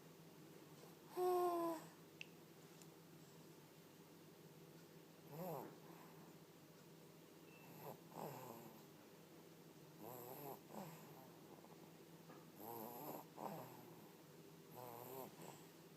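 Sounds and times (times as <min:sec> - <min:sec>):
soft snoring: 0:05.3 - 0:06.3, 0:07.6 - 0:08.8, 0:10.0 - 0:11.8, 0:12.6 - 0:14.1, 0:14.7 - 0:15.8.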